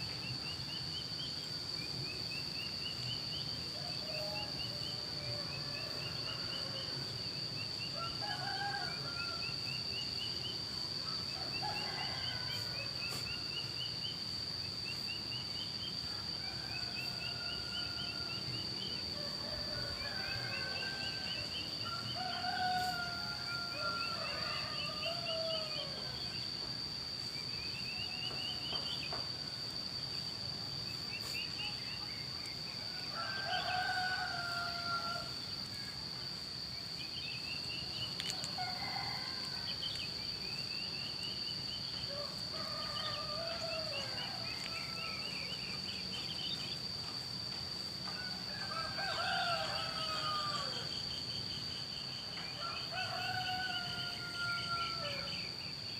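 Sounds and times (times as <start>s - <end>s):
high insect drone: 0.0s - 55.9s
roosters crowing: 7.9s - 9.5s, 11.2s - 13.2s, 16.1s - 26.4s, 32.8s - 35.4s, 38.2s - 39.9s, 41.9s - 45.6s, 48.0s - 51.2s, 52.3s - 55.4s.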